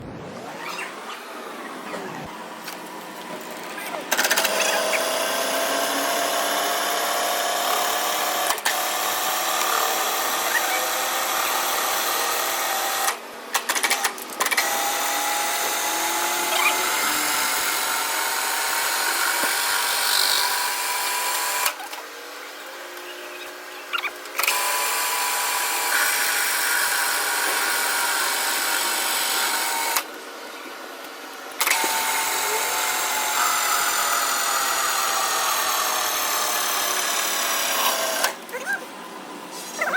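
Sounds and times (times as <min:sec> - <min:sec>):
machine cutting metal whine: 0:14.6 - 0:21.8.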